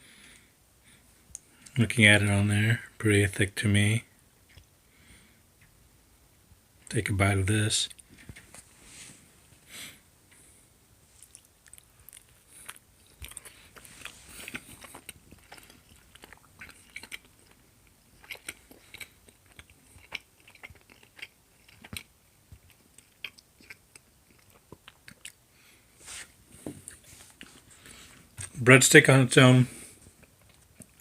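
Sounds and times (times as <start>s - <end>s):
person chewing: 4.4s - 4.8s, 11.1s - 28.6s, 29.8s - 31.0s.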